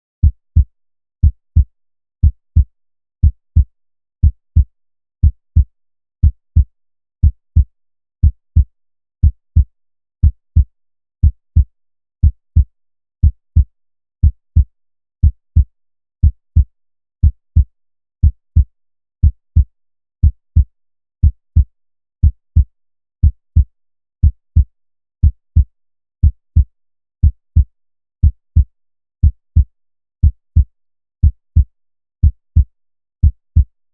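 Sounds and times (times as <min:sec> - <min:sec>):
heartbeat thumps: 0:12.2 - 0:12.6, 0:21.2 - 0:21.6.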